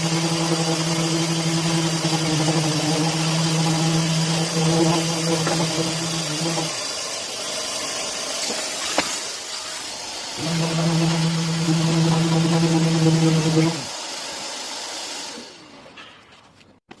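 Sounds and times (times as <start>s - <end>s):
electric sander motor humming: 0.0s - 6.9s, 10.3s - 14.0s.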